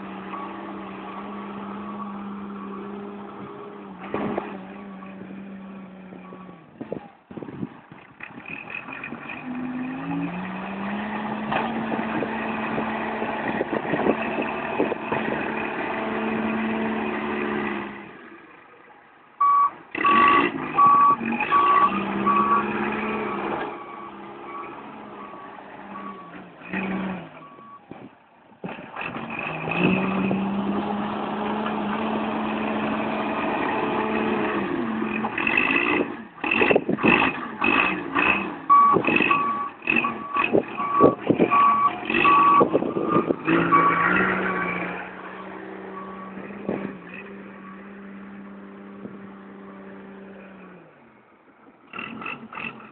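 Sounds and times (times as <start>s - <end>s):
heavy vehicle engine revving: 0.0s - 18.6s, 19.4s - 51.1s, 51.9s - 52.9s
reversing alarm beeps: 19.4s - 26.4s, 38.7s - 44.1s.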